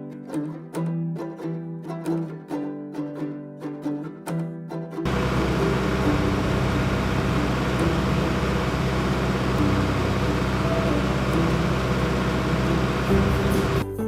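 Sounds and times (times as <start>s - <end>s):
machine hum and hiss: 5.1s - 13.8s.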